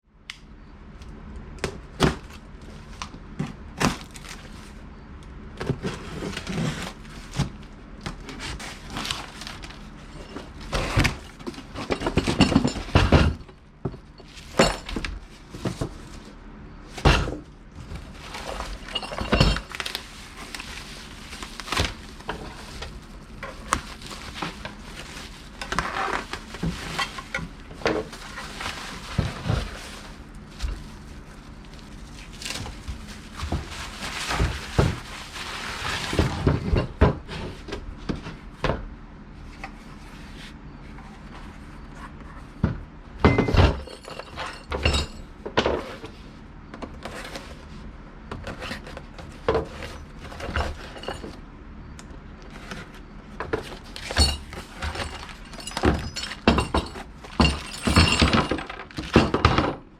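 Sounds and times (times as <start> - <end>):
hard objects clattering: 5.5 - 38.4, 52.5 - 59.9.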